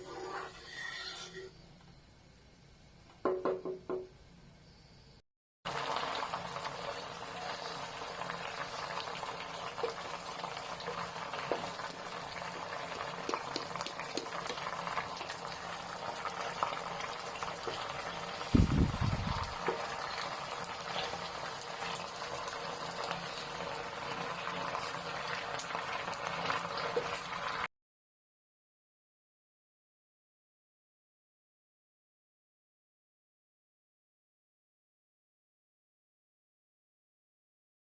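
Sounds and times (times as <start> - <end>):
chicken deep-frying in oil: 5.7 - 27.7.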